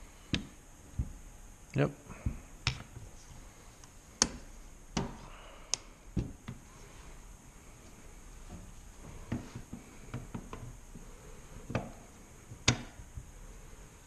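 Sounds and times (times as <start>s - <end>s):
small parts clicking and knocking: 2.6s - 3.1s.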